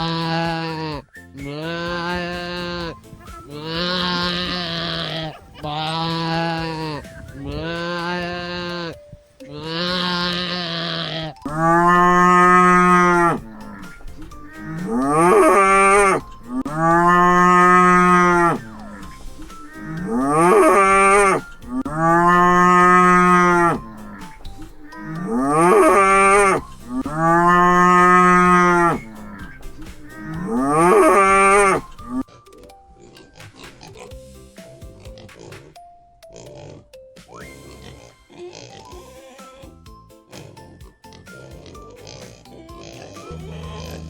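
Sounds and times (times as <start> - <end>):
cow mooing: 3.6 - 32.2, 42.8 - 44.0.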